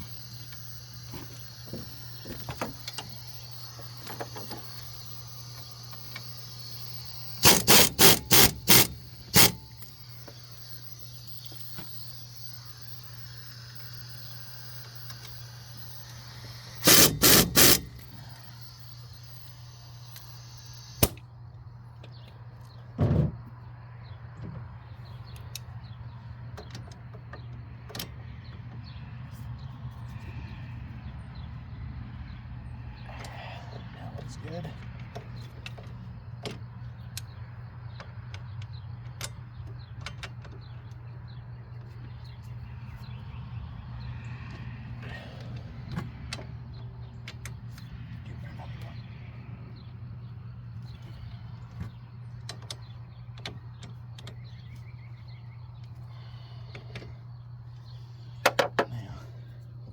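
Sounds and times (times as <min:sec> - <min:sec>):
impact wrench bursts: 0:00.0 - 0:21.2
steady low hum: 0:00.0 - 0:59.9
sharp click: 0:07.4 - 0:09.9, 0:16.8 - 0:18.2, 0:20.1 - 0:21.2.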